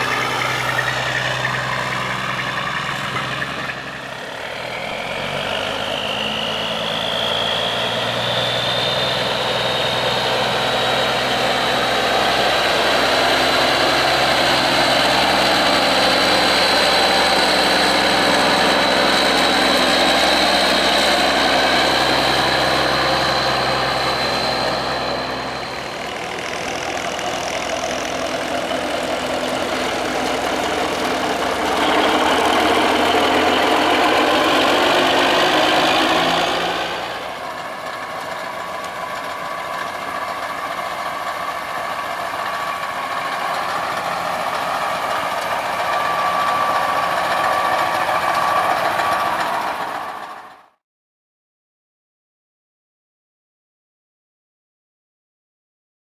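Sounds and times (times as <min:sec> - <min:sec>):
diesel truck engines idling: 0:00.0 - 0:50.6
high whine: 0:08.9 - 0:50.3.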